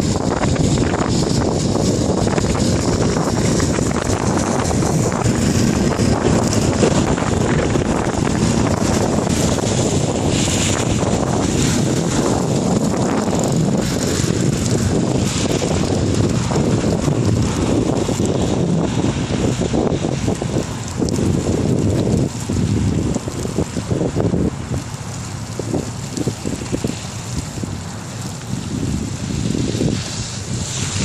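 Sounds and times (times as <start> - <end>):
road noise: 0.0 - 31.0
wind on microphone: 0.0 - 31.0.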